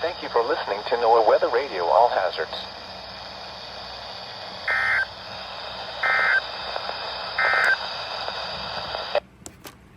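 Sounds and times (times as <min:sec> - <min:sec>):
radio hiss: 0:00.0 - 0:09.2
digital data tone bursts: 0:04.7 - 0:05.1, 0:06.0 - 0:06.5, 0:07.4 - 0:07.8.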